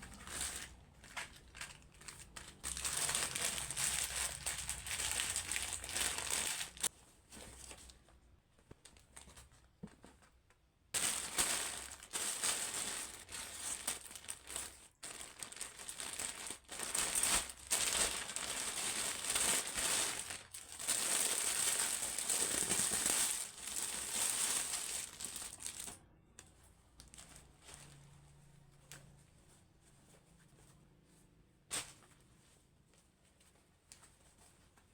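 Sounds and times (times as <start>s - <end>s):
packaging crinkling: 0.0s - 6.9s, 11.0s - 26.0s.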